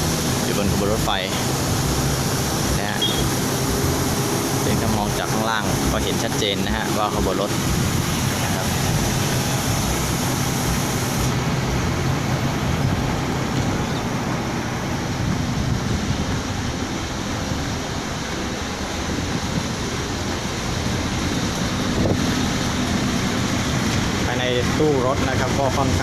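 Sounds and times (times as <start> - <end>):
high hiss: 0.0 - 11.4
diesel train engine idling: 0.0 - 26.0.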